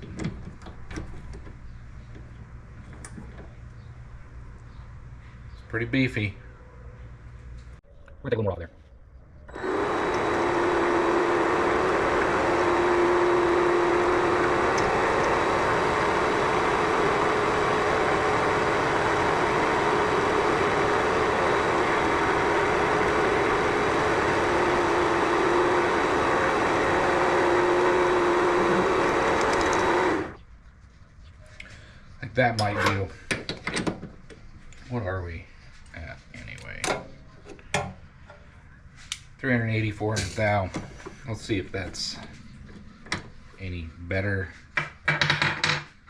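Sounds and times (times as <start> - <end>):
lathe cutting noise: 9.5 - 30.4
lathe machine whine: 9.5 - 30.4.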